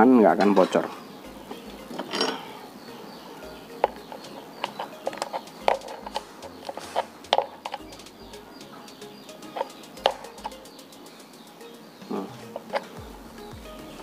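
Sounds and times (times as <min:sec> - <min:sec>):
brass hose fittings clicking: 0:03.7 - 0:10.8.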